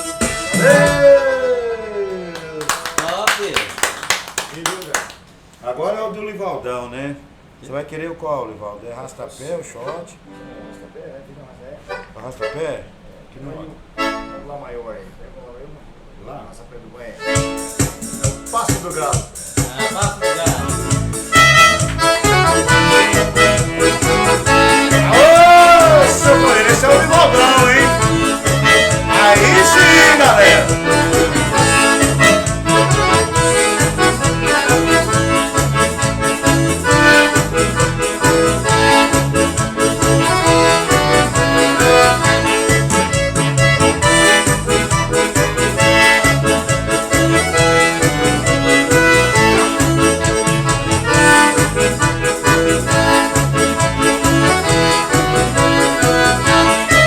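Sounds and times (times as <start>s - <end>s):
accordion band music: 0.0s - 4.2s, 11.8s - 13.1s, 13.8s - 14.6s, 17.2s - 57.0s.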